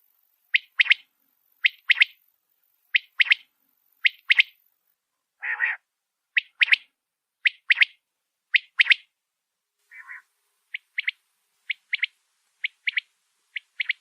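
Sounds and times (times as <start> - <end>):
quail three-note call: 9.9 - 10.3.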